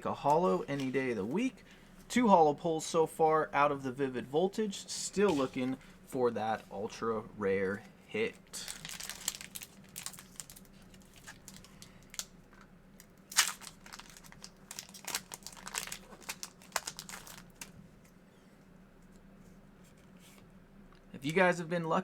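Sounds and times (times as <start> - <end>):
foil wrapper crinkling and tearing: 8.5 - 12.3, 13.0 - 17.8.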